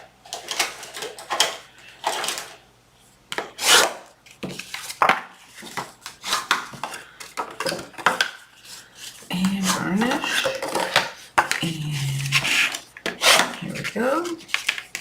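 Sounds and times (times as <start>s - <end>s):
paper rubbing and scraping: 11.8s - 15.0s.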